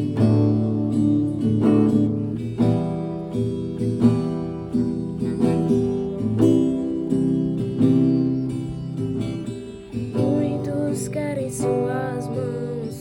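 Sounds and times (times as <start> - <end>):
acoustic guitar strumming chords: 0.0 - 13.0
person singing: 10.1 - 13.0.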